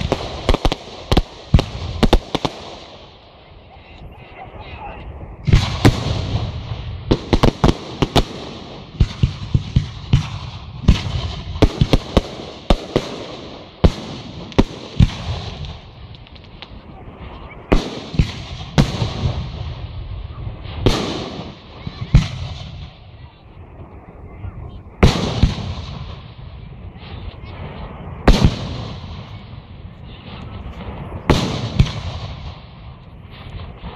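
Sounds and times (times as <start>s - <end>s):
firework crackling: 0.0s - 33.9s.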